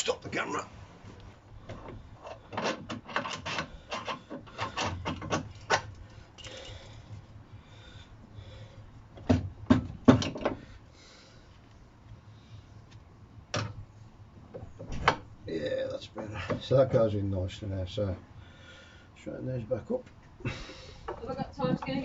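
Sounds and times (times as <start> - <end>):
clicks and knocks of metal parts: 1.7 - 6.8.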